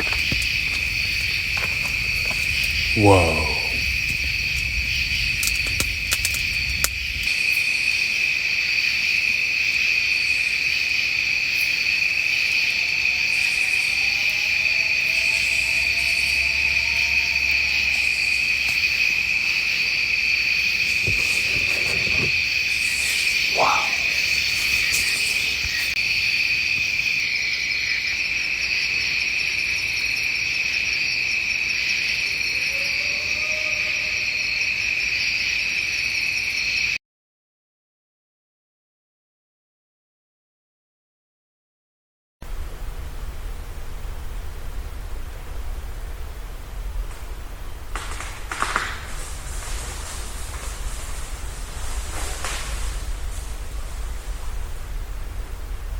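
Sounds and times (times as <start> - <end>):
crickets trilling: 0.0 - 37.0, 43.0 - 55.9
faint drawn-out call: 0.8 - 4.2, 15.1 - 26.0.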